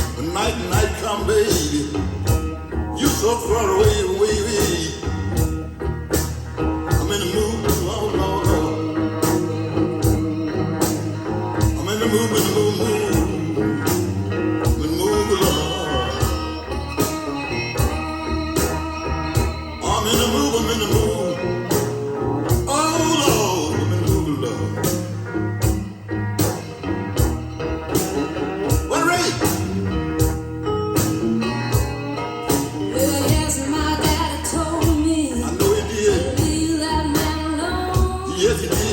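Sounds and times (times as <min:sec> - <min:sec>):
person singing: 0:00.0 - 0:02.4, 0:03.0 - 0:05.4, 0:06.9 - 0:25.0, 0:28.7 - 0:29.8, 0:32.7 - 0:38.9
blues song: 0:00.0 - 0:38.9
electric guitar: 0:00.0 - 0:38.9
steady drum beat: 0:00.0 - 0:38.9.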